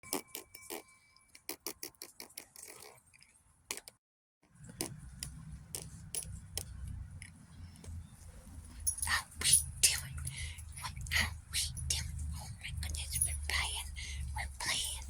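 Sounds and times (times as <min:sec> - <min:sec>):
light clicks and taps: 0:04.7 - 0:09.2.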